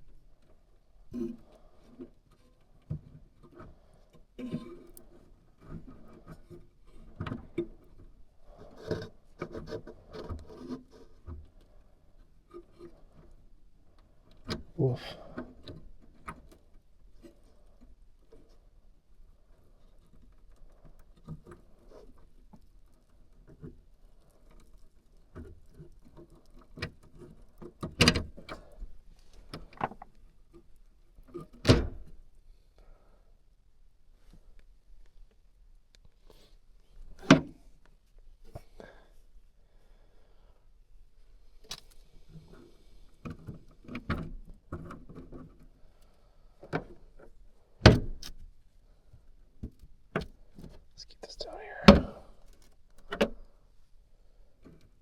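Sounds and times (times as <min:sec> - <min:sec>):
sharp knocks: 0:29.8 - 0:30.0.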